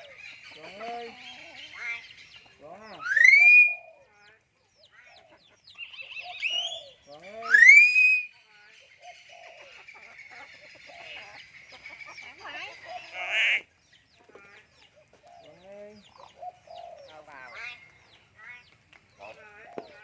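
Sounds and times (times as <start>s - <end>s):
myna birds whistling and chattering: 0.0s - 20.0s
harsh bird call burst: 3.0s - 4.0s, 7.4s - 8.3s
loud rising bird whistle: 3.0s - 4.0s, 7.4s - 8.4s.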